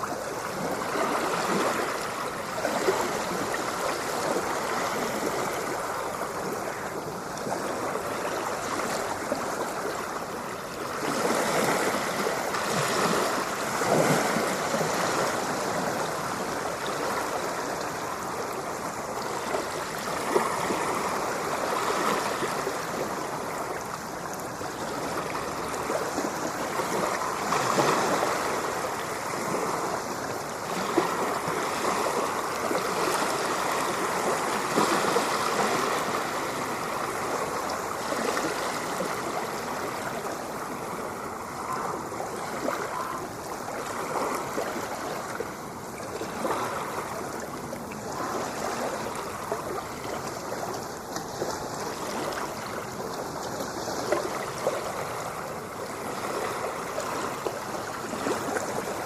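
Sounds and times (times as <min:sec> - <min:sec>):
ocean surf washing: 0:00.0 - 0:59.0.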